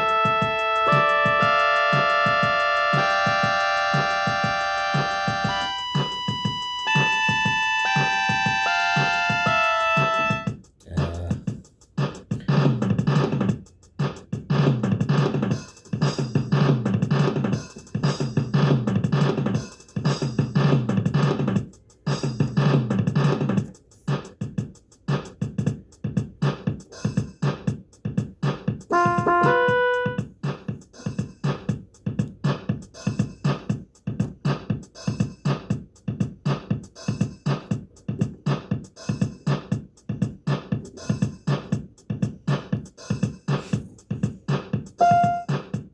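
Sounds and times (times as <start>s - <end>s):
drum-machine beat: 0.0s - 45.9s
single keyboard notes: 28.9s - 30.2s, 45.0s - 45.5s
synth bass and chords: 28.9s - 30.2s.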